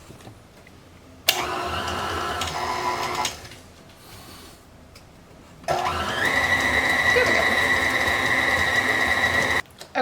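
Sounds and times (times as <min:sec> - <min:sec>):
electric stand mixer running: 0:01.3 - 0:03.6, 0:05.7 - 0:09.6.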